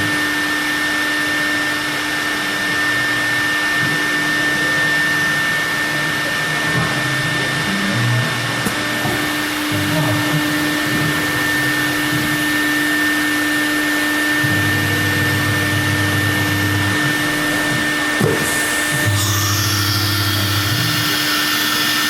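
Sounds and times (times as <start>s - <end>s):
spindle whine: 0.0s - 22.0s
low machine hums: 3.0s - 22.0s.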